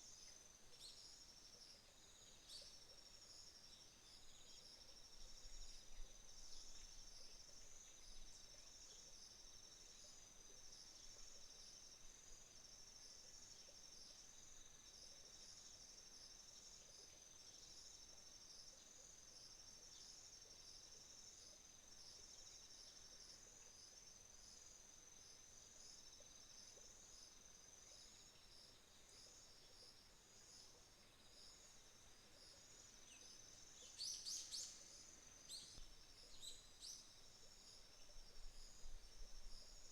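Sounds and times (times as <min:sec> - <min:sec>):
bird chirp: 0:33.0 - 0:37.1.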